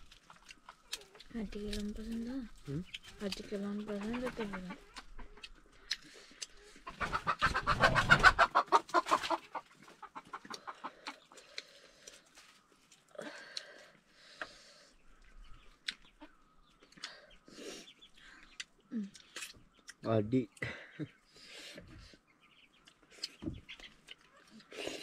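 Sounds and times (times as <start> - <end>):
chicken clucking: 0.0 - 13.1, 15.2 - 20.1.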